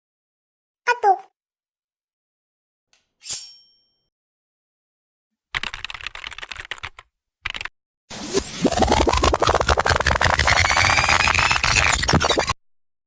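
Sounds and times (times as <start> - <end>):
tape winding whir: 8.1 - 12.6.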